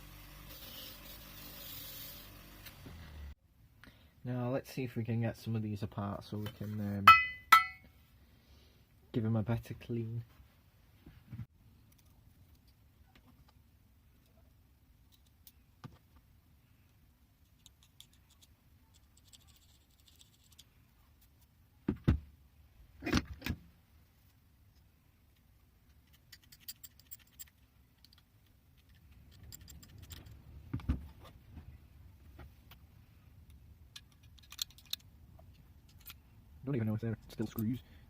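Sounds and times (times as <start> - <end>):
metal spanners clinking: 7.1 - 7.9.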